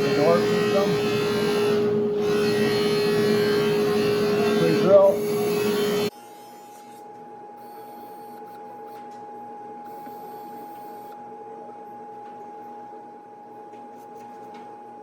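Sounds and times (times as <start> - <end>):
thin high whine: 0.0 - 9.0
steady machine hum: 0.0 - 15.0.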